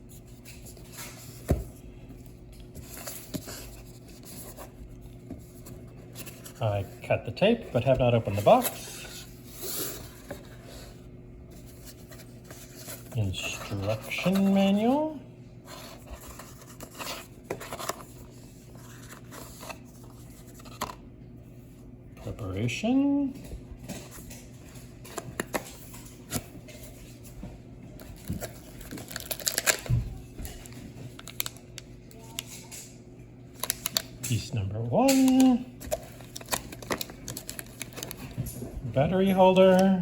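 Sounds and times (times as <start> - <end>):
paper rustling: 7.8 - 15.0, 15.6 - 21.0, 35.0 - 38.4.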